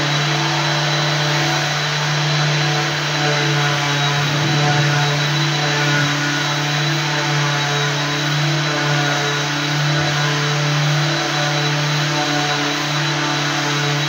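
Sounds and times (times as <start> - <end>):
floor machine motor hum: 0.0 - 14.0.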